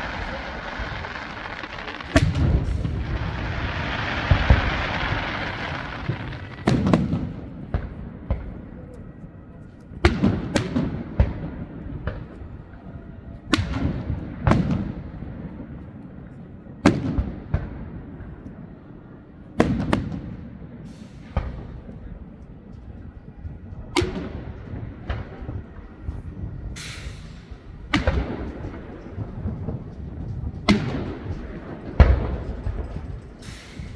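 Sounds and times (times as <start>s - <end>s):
firework shells bursting: 0.0s - 7.4s, 26.8s - 33.9s
short hiss: 26.8s - 27.6s, 33.4s - 33.9s.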